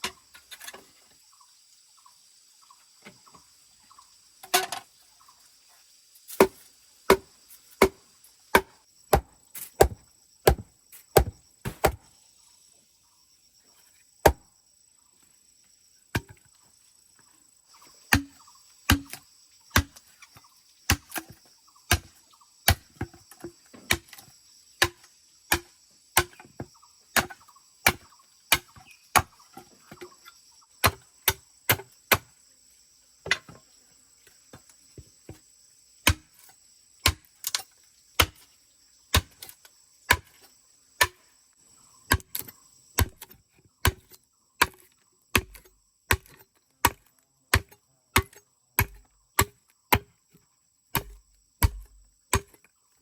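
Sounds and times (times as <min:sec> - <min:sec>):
blade chopping knocks: 0:11.2 - 0:12.0.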